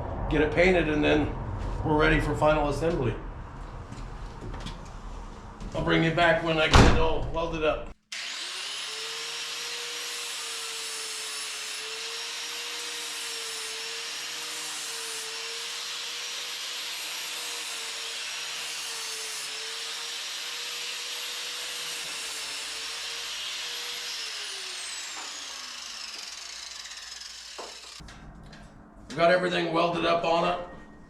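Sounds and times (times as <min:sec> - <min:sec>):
electric grinder whining on metal: 0:08.1 - 0:28.0.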